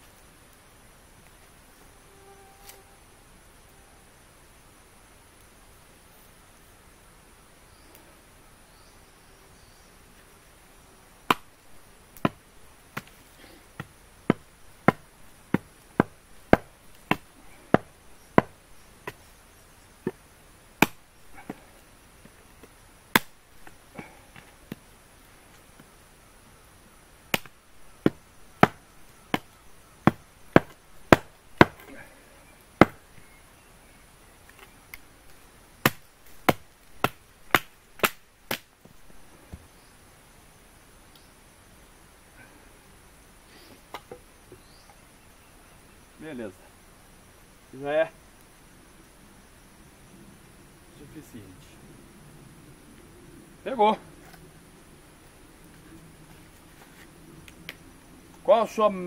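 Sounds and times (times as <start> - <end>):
axe chopping wood: 11.3 - 11.5, 12.2 - 13.2, 13.8 - 19.2, 20.8 - 21.6, 22.6 - 23.8, 27.3 - 32.1, 32.8 - 33.0, 35.8 - 38.7.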